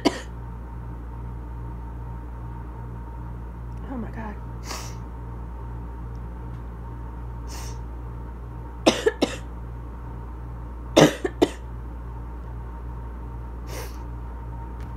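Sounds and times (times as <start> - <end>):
person coughing: 0.0 - 0.3, 8.9 - 9.5, 11.0 - 11.6.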